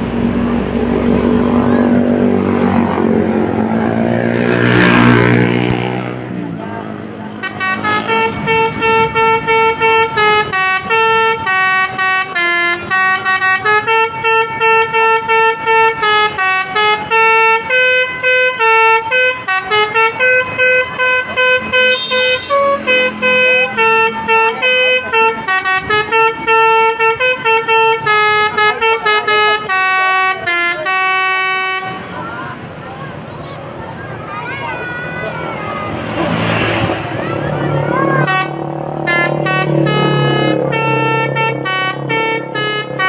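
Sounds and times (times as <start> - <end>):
bus horn playing tune: 0.1 - 32.8, 34.2 - 43.0.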